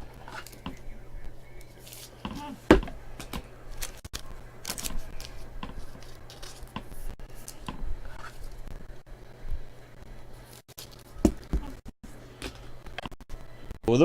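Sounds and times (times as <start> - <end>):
card and plastic rustling: 0.0 - 0.9, 1.6 - 8.7, 10.4 - 11.8
low steady hum: 0.0 - 14.0.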